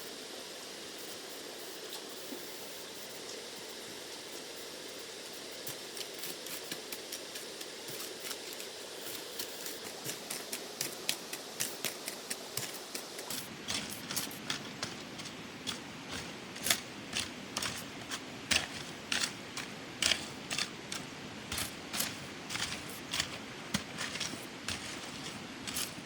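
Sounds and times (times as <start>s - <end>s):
steady hiss: 0.0s - 26.0s.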